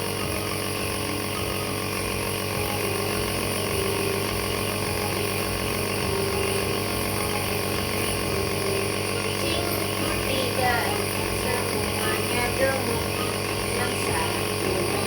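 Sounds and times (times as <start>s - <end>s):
nebuliser compressor humming: 0.0s - 15.0s.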